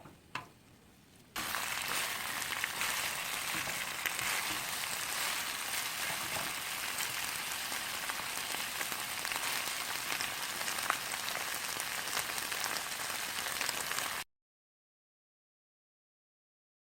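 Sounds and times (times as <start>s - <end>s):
food sizzling in a frying pan: 1.4s - 14.2s.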